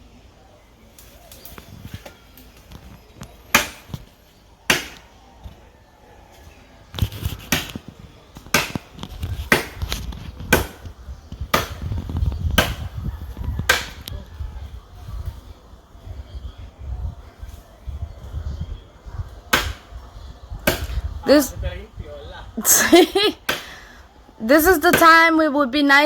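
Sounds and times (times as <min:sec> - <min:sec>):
blade chopping tree trunk: 0:03.5 - 0:04.1, 0:04.7 - 0:05.2, 0:07.0 - 0:13.0, 0:13.6 - 0:14.1, 0:19.5 - 0:19.9, 0:20.6 - 0:21.0, 0:23.5 - 0:23.7.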